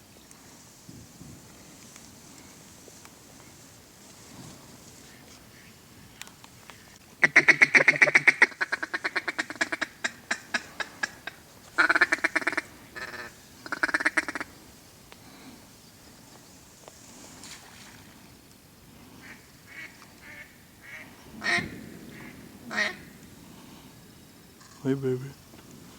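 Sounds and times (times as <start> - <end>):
duck chattering: 7.2 - 14.5
duck quacking: 7.2 - 14.5, 19.2 - 23.0.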